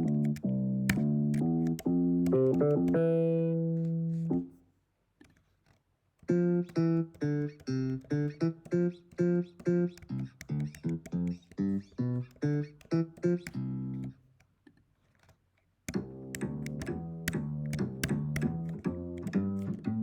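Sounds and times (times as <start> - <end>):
plucked electric bass notes: 0.0 - 4.5, 15.9 - 20.0
upright bass plucking: 0.0 - 4.5, 6.3 - 14.2, 15.9 - 20.0.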